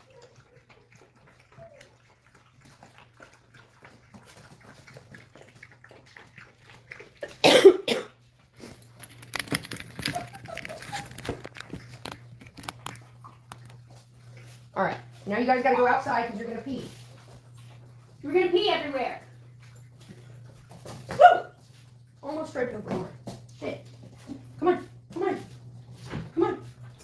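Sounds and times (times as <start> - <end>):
person coughing: 7.4 - 8.2
faint clicks and rustles: 8.4 - 18.3.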